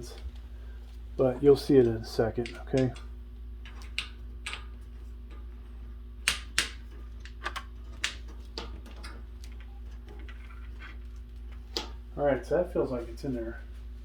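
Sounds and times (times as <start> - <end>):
steady low hum: 0.0 - 14.0
metal hardware clicking and tapping: 2.4 - 4.7.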